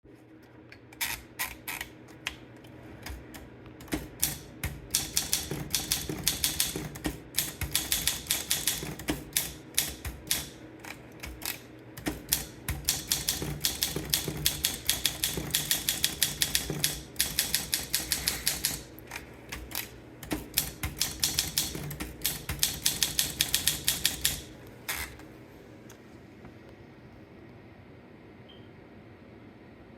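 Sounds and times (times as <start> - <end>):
manual typewriter keystrokes: 3.0 - 25.2.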